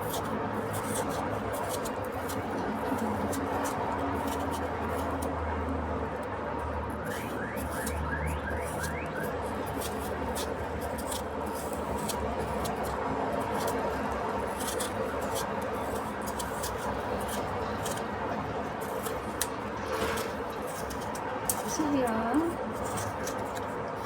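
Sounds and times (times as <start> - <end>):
utensils clicking and tapping: 7.1 - 24.0.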